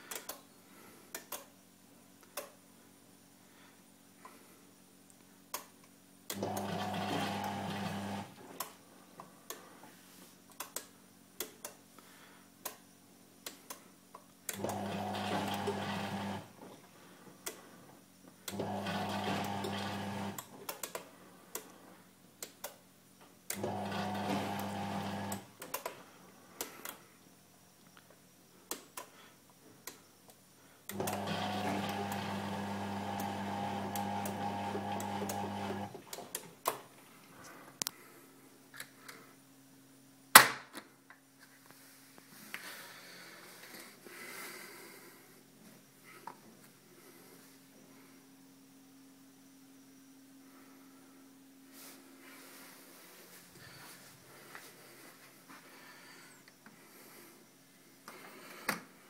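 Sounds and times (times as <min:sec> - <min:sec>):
washing machine motor running: 0:06.4 - 0:08.4, 0:14.6 - 0:16.6, 0:18.5 - 0:20.4, 0:23.6 - 0:25.5, 0:30.9 - 0:36.2.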